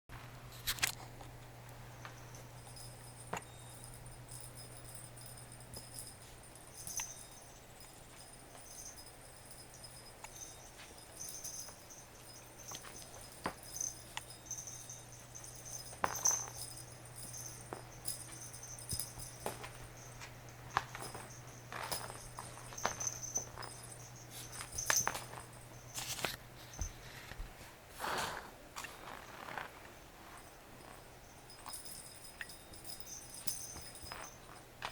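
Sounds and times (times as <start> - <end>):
faint low hum: 0.1 - 34.9.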